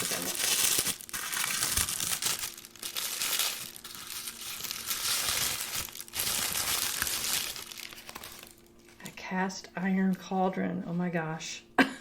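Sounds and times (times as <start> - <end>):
paper packaging crinkling: 0.0 - 9.2.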